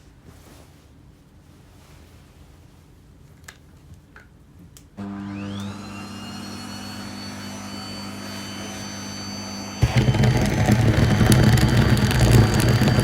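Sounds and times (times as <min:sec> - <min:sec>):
vacuum cleaner running: 0:05.0 - 0:13.0.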